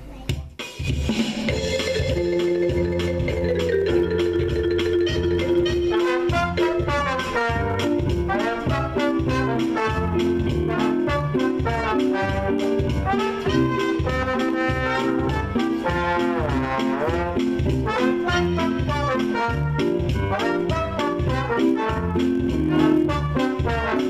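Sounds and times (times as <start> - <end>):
swing band playing: 0.0 - 24.0
sliding horn note: 5.0 - 24.0.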